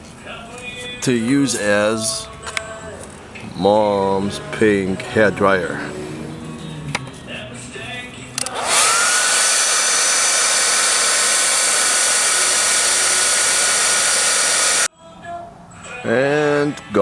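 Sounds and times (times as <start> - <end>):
hair dryer blowing: 8.4 - 14.9.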